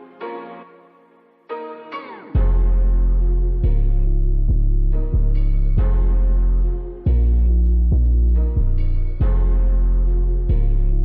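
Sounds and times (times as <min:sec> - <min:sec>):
layered synth music with deep bass: 0:02.4 - 0:11.0.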